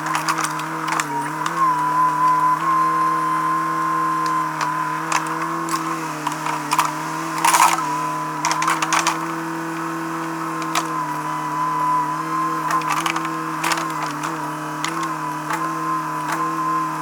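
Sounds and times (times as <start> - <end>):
sharp clicks and knocks: 0.0 - 1.6, 4.2 - 11.1, 12.6 - 16.6
machine engine running: 0.0 - 17.0.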